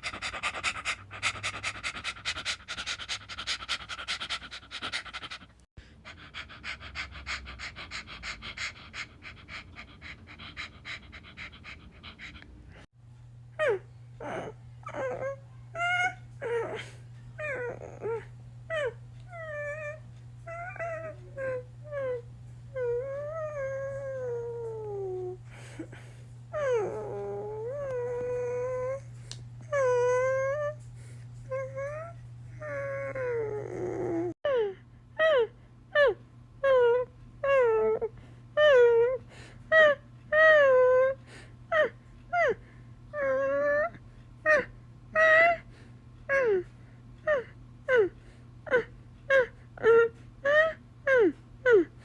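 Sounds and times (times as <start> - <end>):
dog panting: 0.0 - 12.9
dog whining and howling: 13.6 - 45.7, 46.3 - 51.9.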